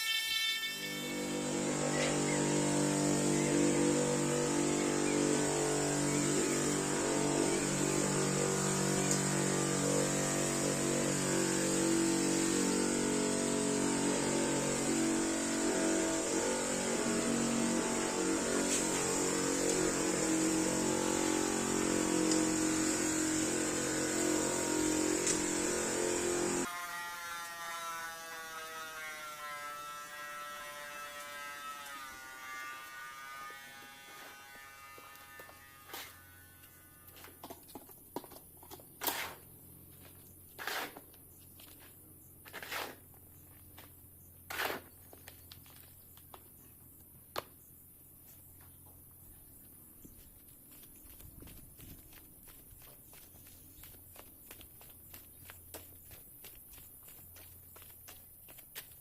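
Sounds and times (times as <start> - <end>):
small motor buzzing: 0.0 - 37.8
faint wavering hum: 0.8 - 26.7.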